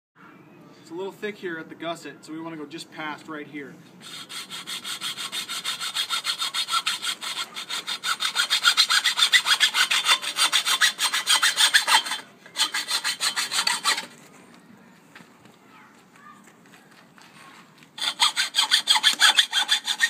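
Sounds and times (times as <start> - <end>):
saw cutting metal tube: 4.0 - 14.1, 18.0 - 20.0.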